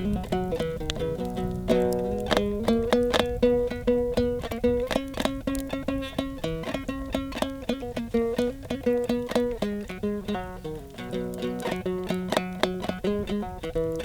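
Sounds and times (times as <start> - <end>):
fast plucked-string melody: 0.0 - 14.0.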